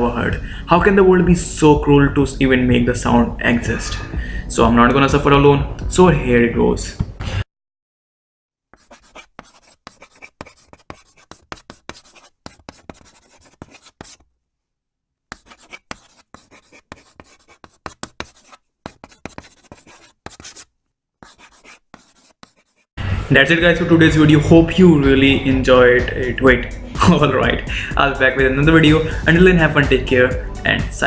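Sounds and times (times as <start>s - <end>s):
irregular scratching strokes: 8.8s - 14.3s, 15.3s - 23.0s.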